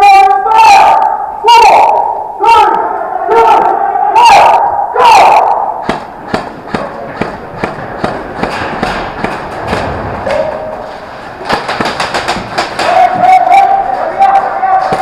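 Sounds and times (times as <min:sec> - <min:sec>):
airsoft guns firing: 0:05.8 - 0:10.4, 0:11.2 - 0:15.0.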